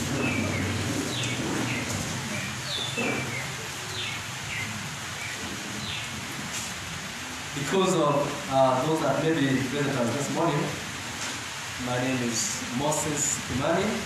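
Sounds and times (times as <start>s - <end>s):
small birds chirping: 0.0s - 6.8s.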